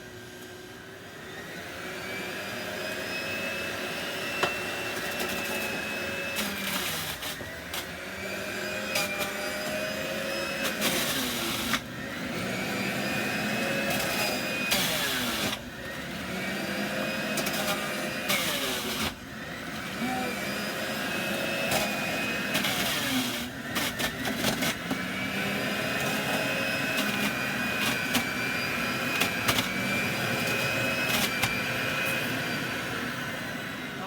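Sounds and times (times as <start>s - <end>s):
juicer motor whine: 0.0s - 34.0s
carrots knocking in juicer: 21.3s - 32.2s.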